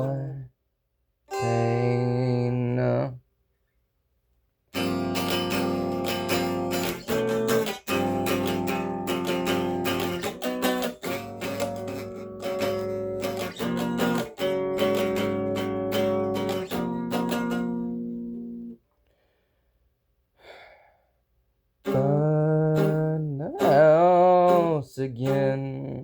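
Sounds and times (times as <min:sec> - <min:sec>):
acoustic guitar strumming chords: 0:01.3 - 0:03.1, 0:04.8 - 0:18.8, 0:21.8 - 0:26.0.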